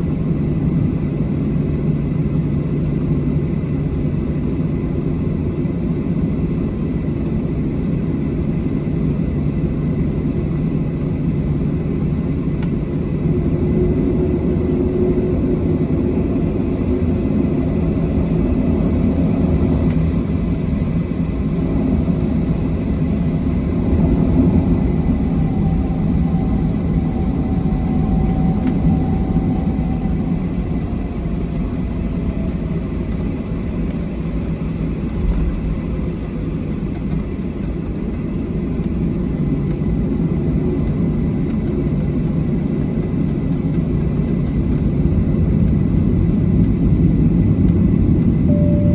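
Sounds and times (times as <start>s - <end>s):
jet engine drone: 0.0s - 48.9s
faint high wavering tone: 22.6s - 32.8s, 48.5s - 48.9s.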